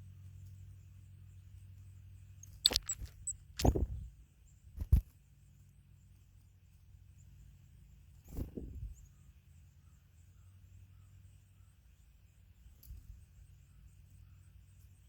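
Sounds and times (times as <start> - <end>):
faint high chirps: 2.4 - 4.0.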